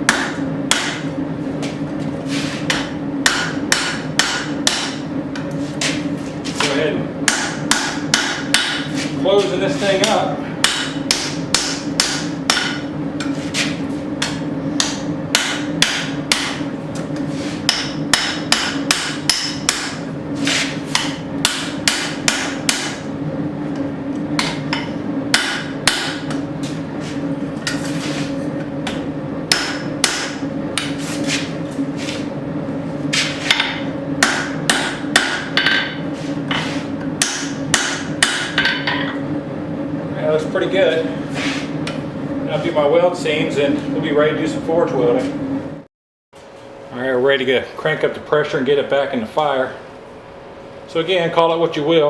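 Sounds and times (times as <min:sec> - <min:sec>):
hammer striking steel on anvil: 0:00.0 - 0:01.1, 0:02.7 - 0:05.0, 0:07.2 - 0:08.9, 0:10.0 - 0:13.3, 0:14.2 - 0:16.7, 0:17.7 - 0:20.0, 0:20.9 - 0:23.0, 0:24.4 - 0:26.8, 0:28.8 - 0:31.5, 0:33.2 - 0:39.2
gas forge hum: 0:00.0 - 0:52.0.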